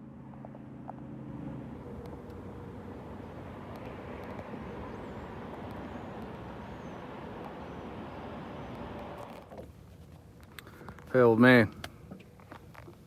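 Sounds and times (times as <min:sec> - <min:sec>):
outboard motor running: 0:00.0 - 0:09.6.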